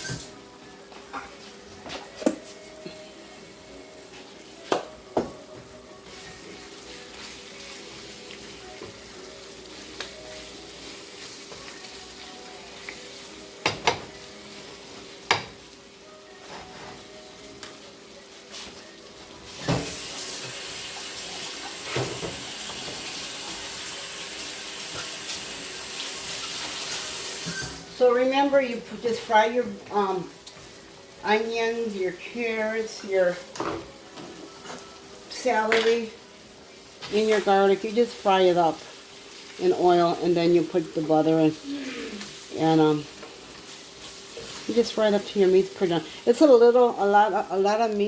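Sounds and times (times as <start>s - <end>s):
food sizzling in a pan: 0.0s - 0.5s, 2.5s - 48.0s
water running from tap: 19.6s - 27.8s.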